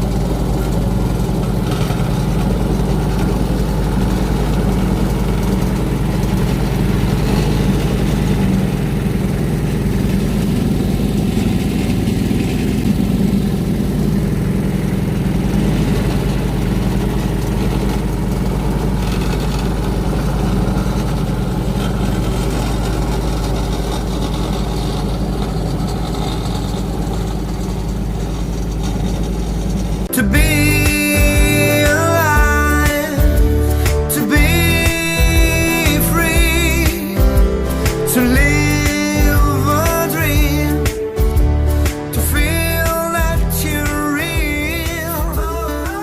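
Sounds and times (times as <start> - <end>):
engine running steadily: 0.0 - 46.0.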